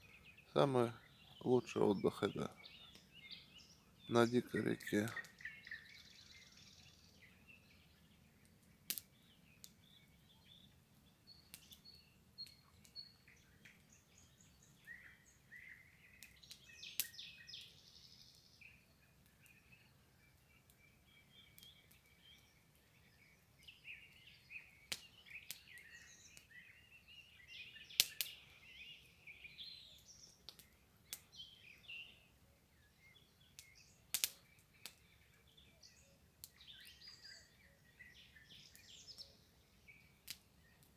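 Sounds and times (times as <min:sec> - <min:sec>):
songbirds chirping: 0:00.0 - 0:40.9
sharp clicks: 0:33.6 - 0:35.0.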